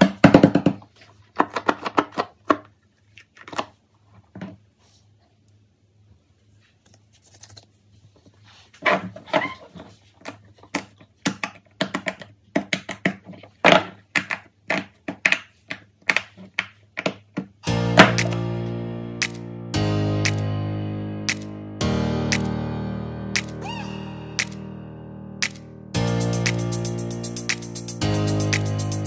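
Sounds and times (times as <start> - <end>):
sustained musical tone: 17.6 - 29.0.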